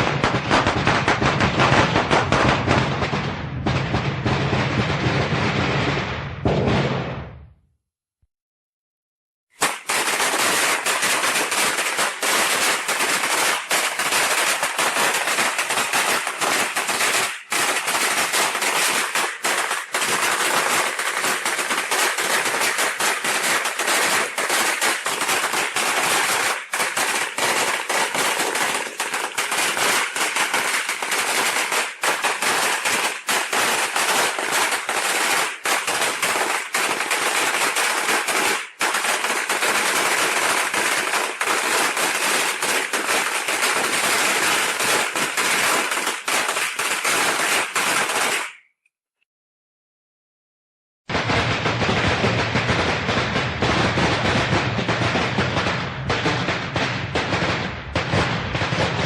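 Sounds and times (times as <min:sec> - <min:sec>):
firecrackers crackling: 0:00.0 - 0:06.0, 0:09.5 - 0:48.6, 0:51.1 - 0:55.6.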